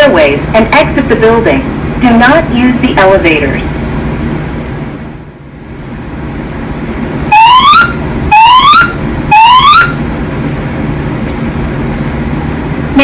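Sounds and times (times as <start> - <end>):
spoken evacuation message: 0.0 - 3.7
rising whoop alarm tones: 7.3 - 10.0.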